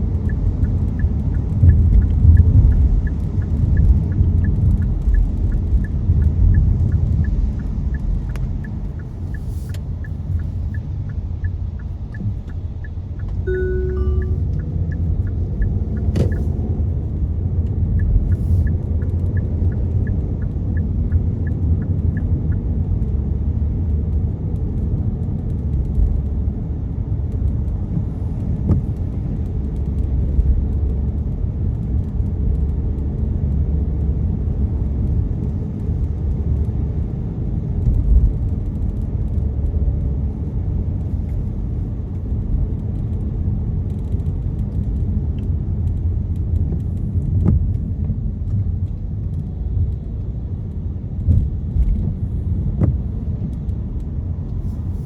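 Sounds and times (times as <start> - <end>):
car cabin road rumble: 0.0 - 55.0
faint ticks: 0.1 - 23.2.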